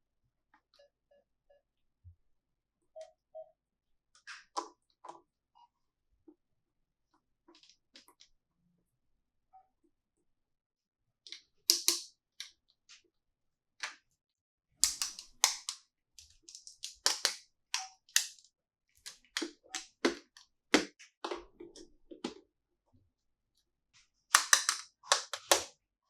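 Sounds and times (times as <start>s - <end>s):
plastic toy pieces clicking: 11.7s - 12.1s, 14.8s - 20.2s, 24.3s - 25.7s.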